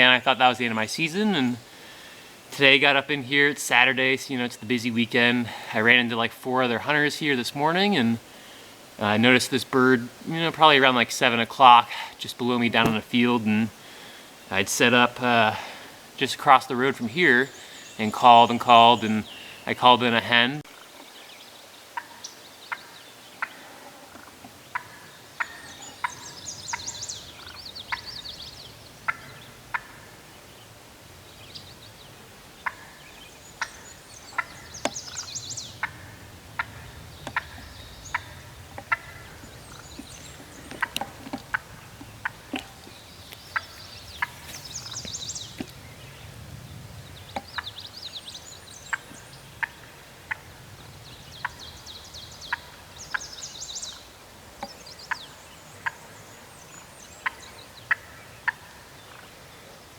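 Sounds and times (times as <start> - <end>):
turkey hen clucking: 22.0 - 30.8, 31.5 - 45.8, 47.3 - 47.8, 48.9 - 50.5, 52.5 - 54.0, 54.6 - 56.1, 57.2 - 59.3.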